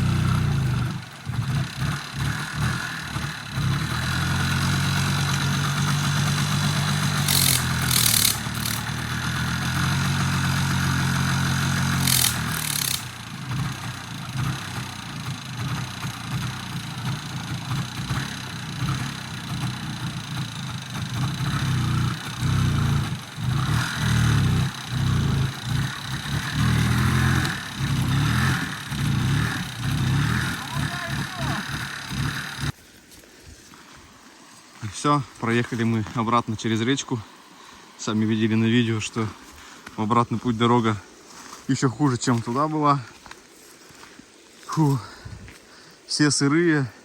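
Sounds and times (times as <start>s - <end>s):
vehicle engine surging: 0.0s - 32.8s.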